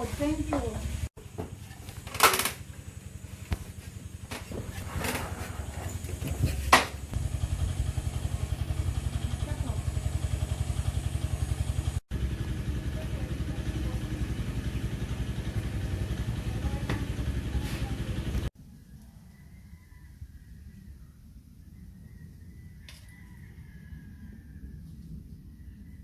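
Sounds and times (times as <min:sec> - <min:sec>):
small engine chugging: 0:00.0 - 0:18.5.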